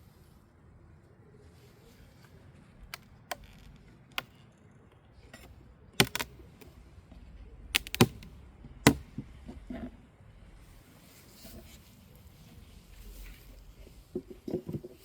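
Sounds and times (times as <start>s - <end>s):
wooden hive parts knocking: 6.0s - 6.3s, 7.8s - 9.2s.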